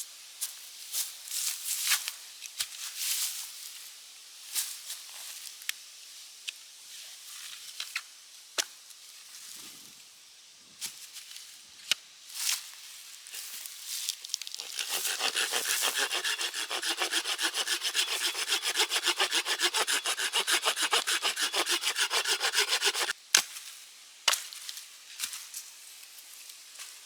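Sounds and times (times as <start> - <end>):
hand saw cutting wood: 14.6 - 23.2.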